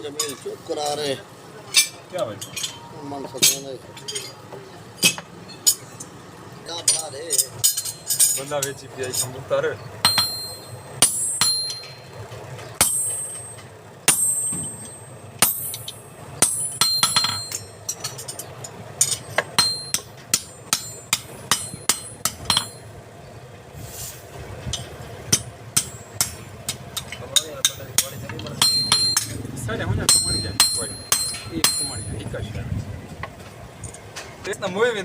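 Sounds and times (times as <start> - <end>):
hammer striking metal: 1.7 - 4.4, 5.0 - 6.1, 6.8 - 9.3, 10.0 - 12.1, 12.8 - 22.9, 24.7 - 29.4, 30.0 - 32.3.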